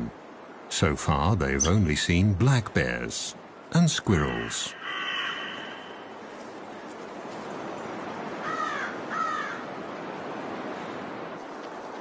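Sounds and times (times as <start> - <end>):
crow cawing: 4.7 - 6.1, 8.4 - 9.7.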